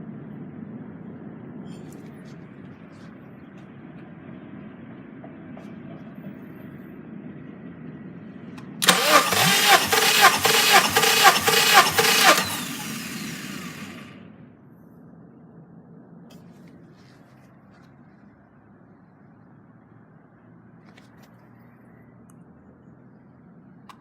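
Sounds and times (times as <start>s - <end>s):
engine cranking by starter: 8.6s - 14.4s.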